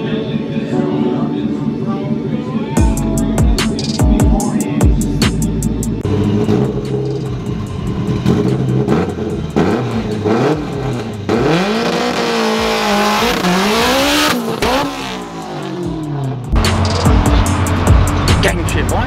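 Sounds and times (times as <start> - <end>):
race car engine revving: 4.9 - 19.0.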